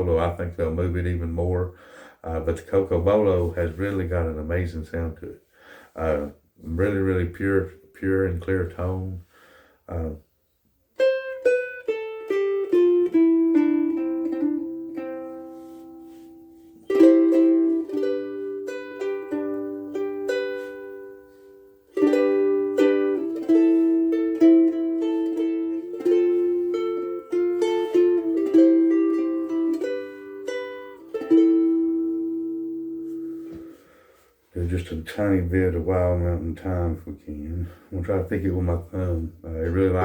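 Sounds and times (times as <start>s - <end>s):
ukulele melody and chords: 11.0s - 33.8s, 39.0s - 40.0s.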